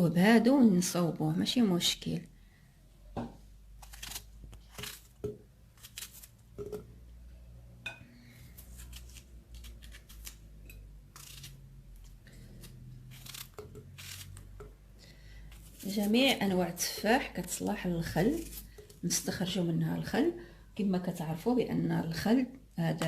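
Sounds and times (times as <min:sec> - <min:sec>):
knife cutting apples: 0:03.7 - 0:06.9, 0:08.3 - 0:14.8, 0:15.5 - 0:19.3.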